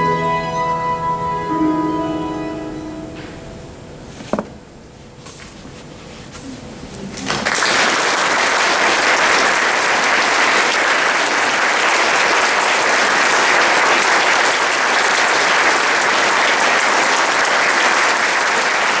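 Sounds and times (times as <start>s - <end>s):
audience applauding: 7.2s - 19.0s.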